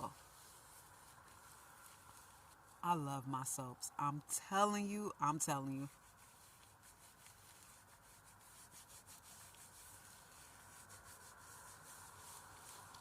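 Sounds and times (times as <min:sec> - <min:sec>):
hands rubbing soap lather: 0:05.9 - 0:13.0.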